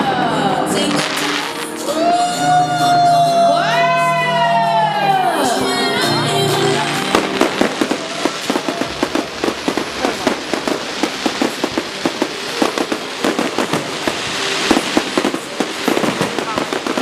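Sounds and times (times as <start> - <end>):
fireworks bangs and crackles: 0.0 - 3.1, 6.6 - 17.0.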